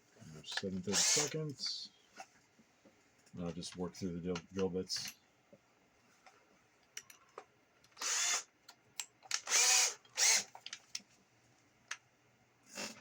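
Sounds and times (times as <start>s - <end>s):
electric drill boring into plastic: 0.9s - 1.4s, 8.0s - 8.5s, 9.4s - 10.5s
small clicks and knocks: 10.5s - 11.2s.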